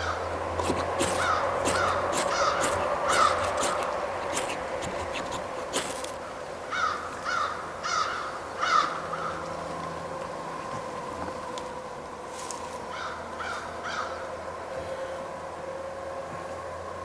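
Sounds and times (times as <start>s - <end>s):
short scraping strokes: 0.6s - 6.2s
crows cawing: 6.7s - 9.3s.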